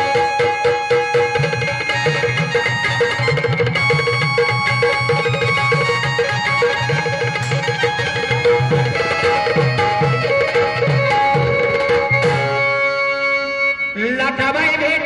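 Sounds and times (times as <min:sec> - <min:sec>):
fast hand-drum rhythm: 0:00.0 - 0:12.7
held melody notes: 0:00.0 - 0:14.2.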